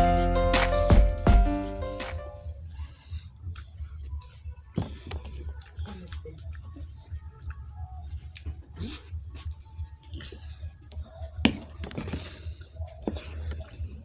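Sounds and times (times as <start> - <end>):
wet eating sounds: 2.6 - 11.2.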